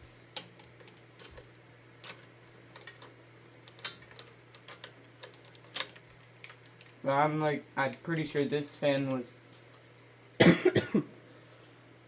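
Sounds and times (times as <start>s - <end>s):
metal parts clicking and tapping: 0.2s - 7.0s, 7.8s - 9.3s.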